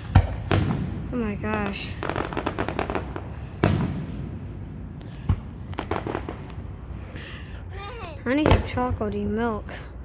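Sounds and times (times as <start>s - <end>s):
fireworks crackling and banging: 0.0s - 10.0s.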